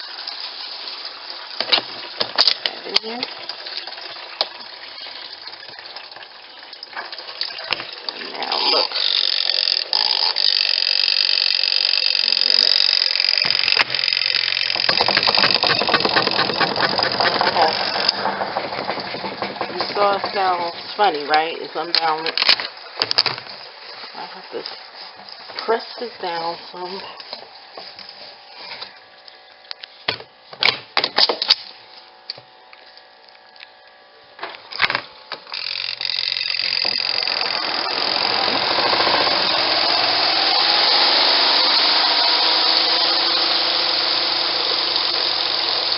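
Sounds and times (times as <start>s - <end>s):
spin dryer rushing noise: 0.0s - 28.2s, 35.3s - 45.9s
motor hum: 0.0s - 45.9s
fast knocking rattle: 11.6s - 21.0s, 35.6s - 41.5s
sharp knocks: 14.7s - 20.5s.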